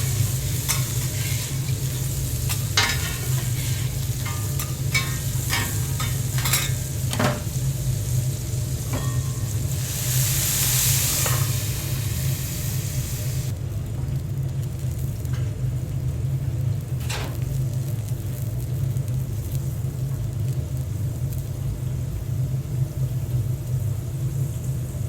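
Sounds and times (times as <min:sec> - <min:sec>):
low hum: 0:00.0 - 0:13.5
food sizzling on griddle: 0:00.0 - 0:25.0.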